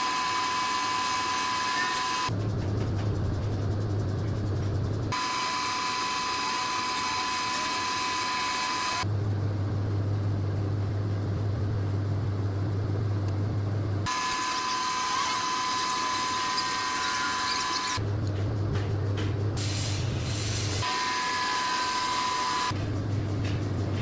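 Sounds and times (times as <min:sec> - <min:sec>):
lathe high whine with hiss: 0:00.0 - 0:02.3, 0:05.0 - 0:09.1, 0:14.1 - 0:18.0, 0:19.6 - 0:22.8
low motor hum: 0:00.4 - 0:20.3, 0:21.9 - 0:24.0.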